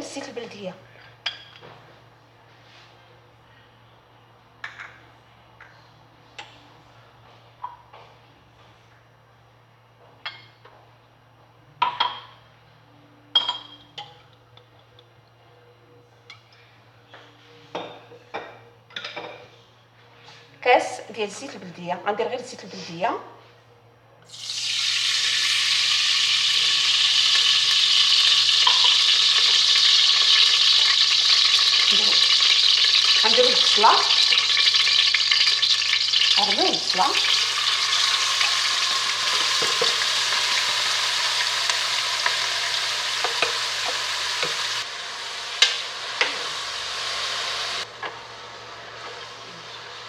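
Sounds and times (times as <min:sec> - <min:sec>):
glass and pots clinking: 0:13.3 - 0:14.2, 0:17.8 - 0:19.4, 0:26.5 - 0:44.8.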